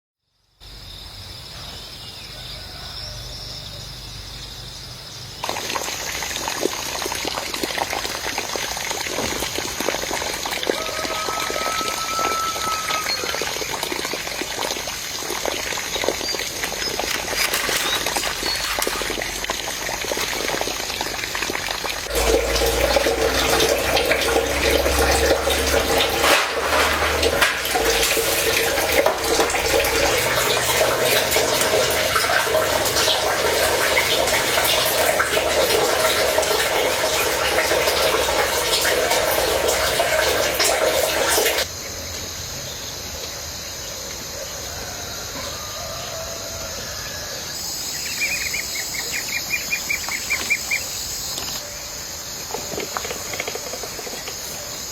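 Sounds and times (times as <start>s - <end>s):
insects chirping: 0.2s - 54.9s
water running and splashing: 5.4s - 41.7s, 47.6s - 54.9s.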